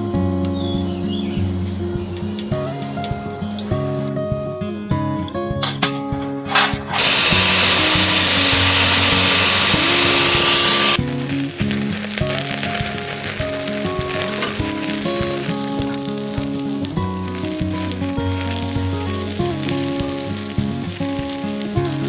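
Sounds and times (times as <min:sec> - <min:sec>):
food sizzling on a grill: 0:07.0 - 0:22.0
background music: 0:11.0 - 0:22.0.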